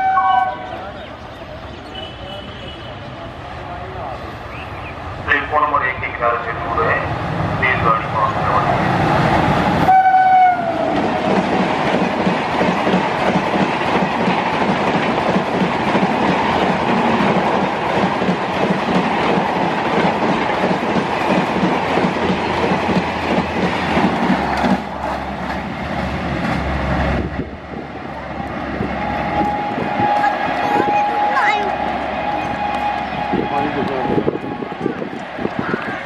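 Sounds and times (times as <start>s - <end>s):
faint locomotive horn: 0.0s - 0.9s, 1.9s - 3.2s, 9.9s - 11.0s, 28.8s - 34.6s
train coaches rushing past: 0.0s - 36.0s.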